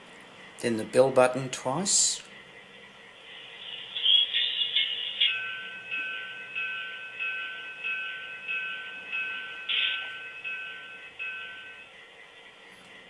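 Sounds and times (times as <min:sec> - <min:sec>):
locomotive bell ringing: 0:03.2 - 0:12.7.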